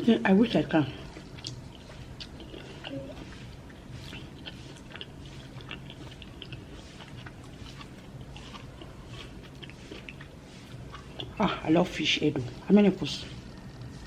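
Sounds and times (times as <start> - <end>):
faint low hum: 0.0 - 14.0
person chewing food: 0.5 - 11.8.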